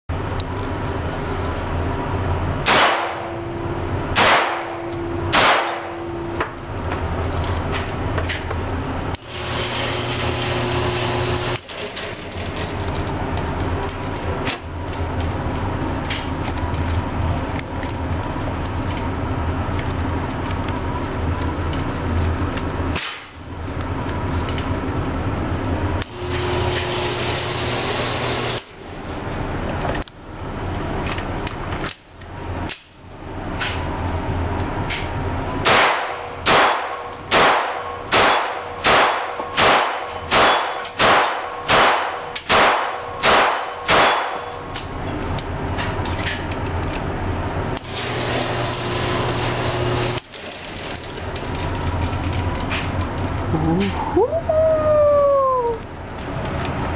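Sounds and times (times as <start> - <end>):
background hum: 0.2 - 56.9
handgun shots: 2.6 - 3.4, 4.2 - 6.0, 35.6 - 44.5.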